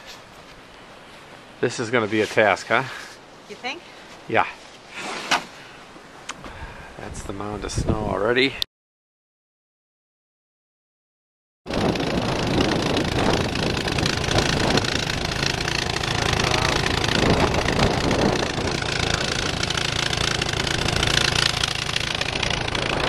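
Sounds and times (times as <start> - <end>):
gasoline engine running: 11.7 - 23.0.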